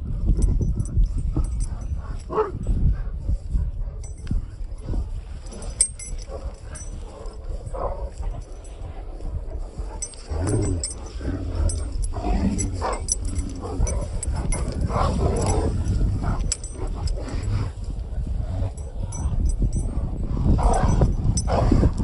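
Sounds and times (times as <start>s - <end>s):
dogs calling while playing: 9.6s - 17.2s.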